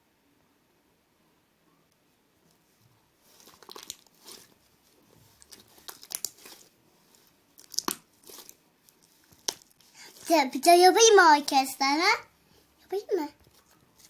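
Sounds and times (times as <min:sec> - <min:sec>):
slime squeezed and stretched: 0:03.3 - 0:04.5, 0:05.3 - 0:10.3
slime popping and clicking: 0:03.5 - 0:04.1, 0:05.5 - 0:06.7, 0:07.6 - 0:08.6, 0:09.3 - 0:09.8.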